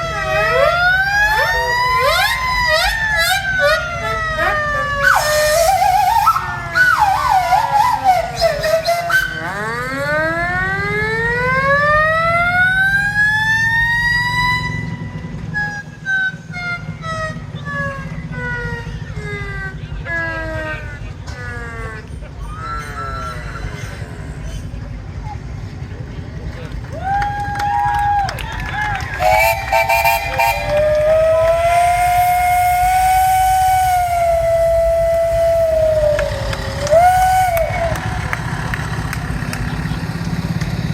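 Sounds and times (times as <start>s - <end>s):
steam whistles blowing: 0.0s - 10.2s, 13.9s - 20.5s, 29.0s - 40.8s
whistle gliding upward: 0.0s - 20.8s, 27.0s - 40.7s
steam engine whistle blast: 5.0s - 9.5s, 29.2s - 38.9s.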